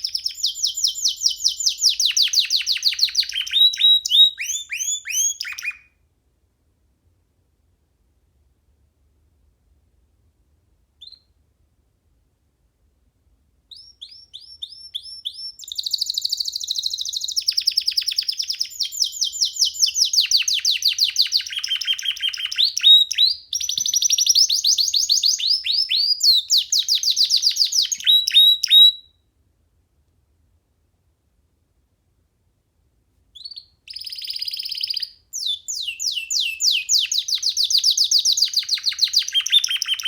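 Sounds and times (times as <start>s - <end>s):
canary singing trills: 0.0s - 5.9s, 13.7s - 29.1s, 33.4s - 40.0s.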